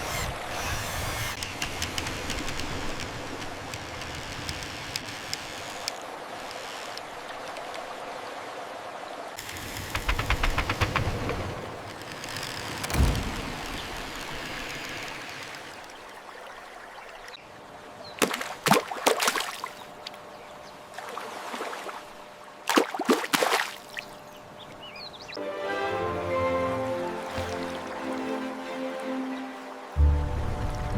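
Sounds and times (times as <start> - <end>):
water splashing: 18.2 - 19.8, 21.0 - 24.1.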